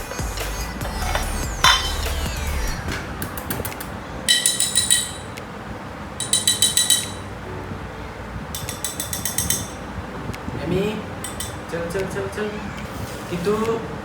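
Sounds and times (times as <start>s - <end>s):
rapid high ringing clinks: 4.3s - 5.4s, 6.2s - 7.3s.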